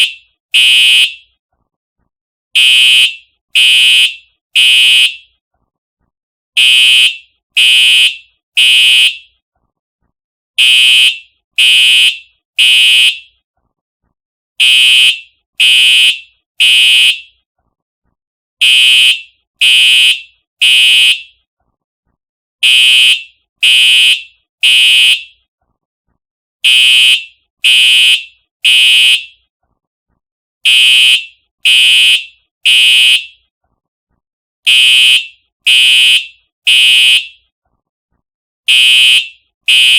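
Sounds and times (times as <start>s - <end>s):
fire alarm horn blasts: 0.0s - 1.3s, 2.6s - 5.3s, 6.6s - 9.4s, 10.6s - 13.4s, 14.6s - 17.4s, 18.6s - 21.4s, 22.6s - 25.4s, 26.6s - 29.4s, 30.6s - 33.4s, 34.7s - 37.4s, 38.7s - 39.9s.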